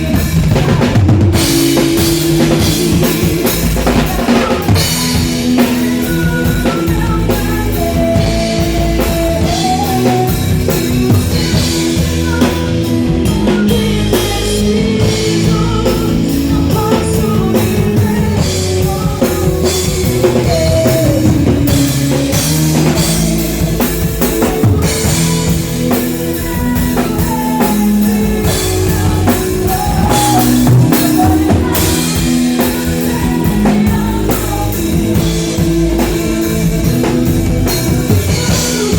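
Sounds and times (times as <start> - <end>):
bass guitar: 0.0 - 38.9
drum kit: 0.0 - 38.9
electric guitar: 0.0 - 38.9
gospel rock band playing: 0.0 - 38.9
melodic lead line: 0.0 - 38.9.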